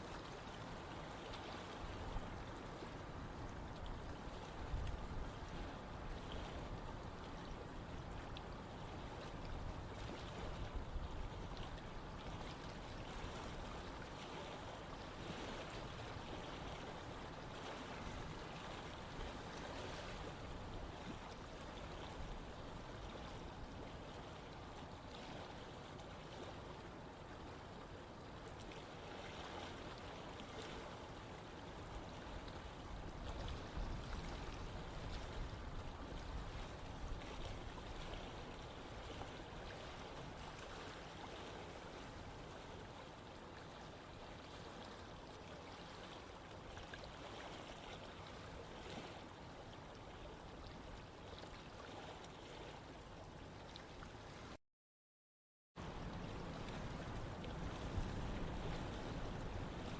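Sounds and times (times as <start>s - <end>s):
stream water flowing: 0.0s - 54.6s, 55.8s - 59.9s.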